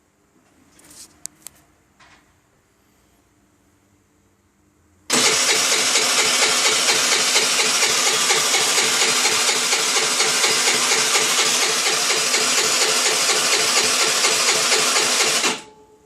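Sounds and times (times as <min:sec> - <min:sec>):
scooter engine running: 0:05.1 - 0:15.6.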